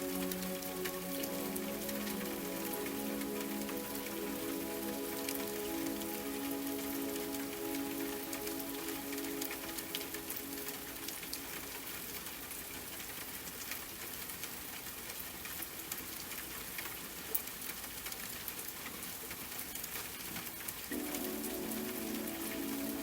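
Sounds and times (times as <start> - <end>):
soft sustained music: 0.0 - 12.2, 20.9 - 23.0
steady rain pattering: 0.0 - 23.0.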